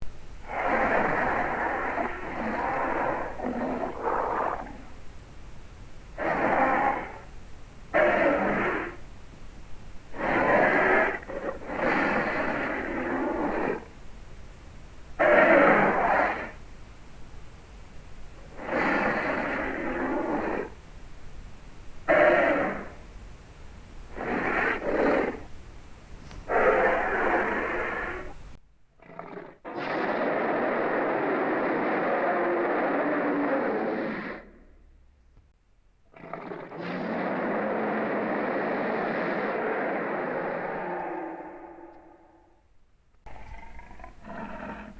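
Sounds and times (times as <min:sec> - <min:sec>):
low hiss: 0:00.0 - 0:44.9
dinosaur roar: 0:00.4 - 0:05.0, 0:06.2 - 0:07.3, 0:07.9 - 0:09.0, 0:10.1 - 0:13.9, 0:15.2 - 0:16.6, 0:18.5 - 0:20.8, 0:22.1 - 0:23.0, 0:24.1 - 0:25.5, 0:26.5 - 0:28.4, 0:29.0 - 0:34.7, 0:36.1 - 0:42.6, 0:43.3 - 0:44.9.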